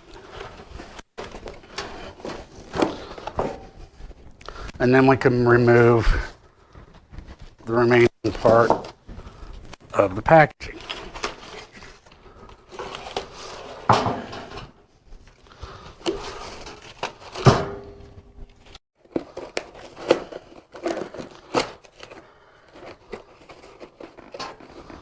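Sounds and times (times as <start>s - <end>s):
packaging rustling and scraping: 0.0s - 4.7s, 10.6s - 25.0s.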